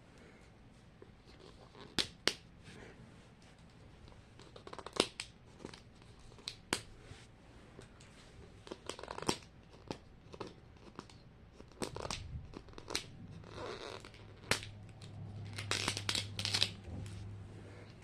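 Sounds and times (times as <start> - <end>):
plastic packaging crinkling: 14.0 - 16.8.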